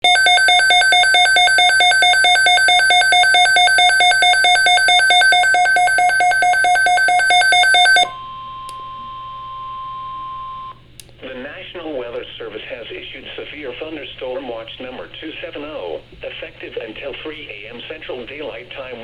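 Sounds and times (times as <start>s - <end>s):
steady warning tone: 0.0s - 10.8s.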